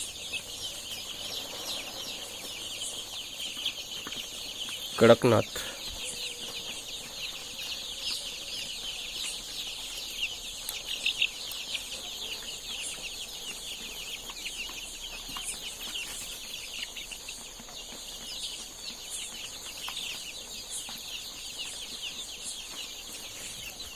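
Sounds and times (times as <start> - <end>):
chickens cheeping: 0.0 - 23.9.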